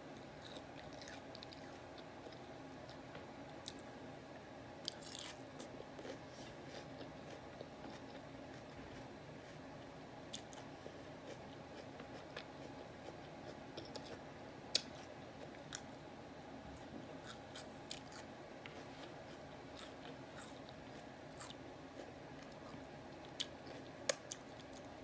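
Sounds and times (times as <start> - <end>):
low room hum: 0.0 - 25.0
person chewing: 0.4 - 3.0, 10.3 - 15.9, 17.2 - 24.9.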